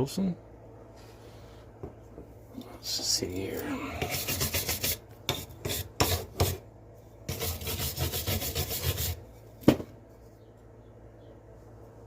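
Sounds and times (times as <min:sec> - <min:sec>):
rubbing on a saw blade: 0:04.0 - 0:06.6, 0:07.3 - 0:09.2.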